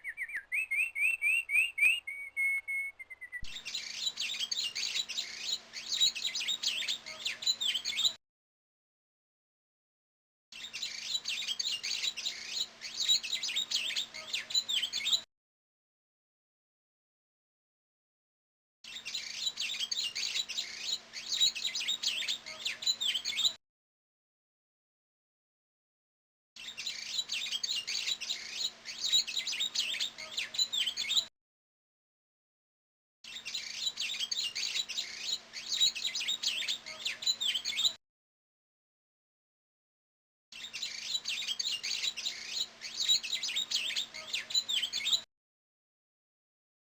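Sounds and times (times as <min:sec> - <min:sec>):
bird chirps and trills: 0:00.0 - 0:08.2, 0:10.6 - 0:15.2, 0:18.9 - 0:23.6, 0:26.6 - 0:31.3, 0:33.3 - 0:38.0, 0:40.6 - 0:45.3.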